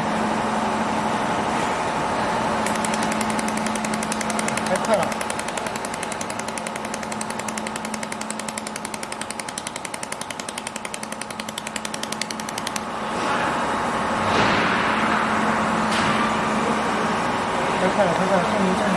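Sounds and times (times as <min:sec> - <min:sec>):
laser welder clicking: 0:02.6 - 0:12.9.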